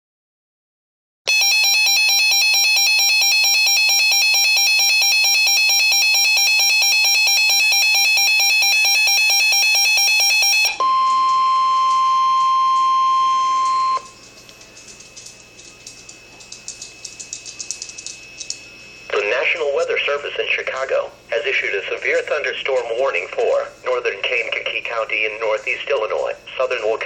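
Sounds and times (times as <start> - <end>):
buzzy two-tone alarm: 1.3 - 20.4
steady warning tone: 1.3 - 27.0.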